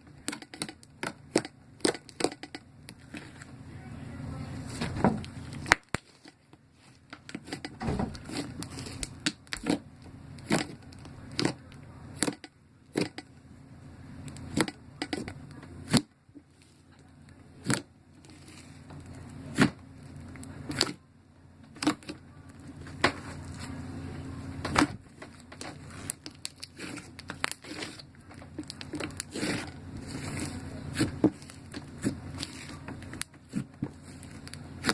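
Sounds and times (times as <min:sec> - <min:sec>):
slime popping and crackling: 0:05.2 - 0:06.5, 0:25.0 - 0:34.9.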